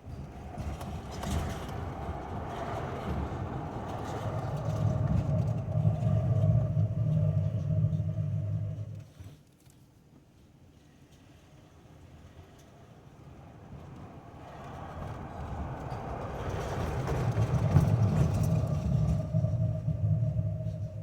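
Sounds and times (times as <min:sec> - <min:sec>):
low road rumble: 0:00.0 - 0:09.2, 0:14.1 - 0:21.0
brake whining tone: 0:02.7 - 0:09.2.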